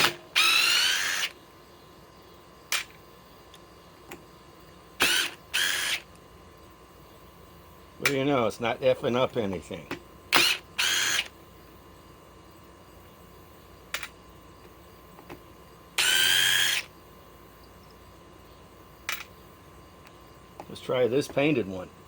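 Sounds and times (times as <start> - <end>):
impact driver whining: 0.0 - 1.4, 5.0 - 6.1, 10.3 - 11.4, 16.0 - 16.9.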